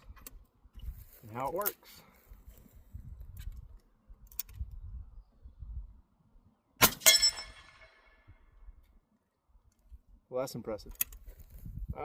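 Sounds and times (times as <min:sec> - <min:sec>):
suppressed rifle shot: 0:06.8 - 0:08.1
metallic ringing hit: 0:06.8 - 0:08.3.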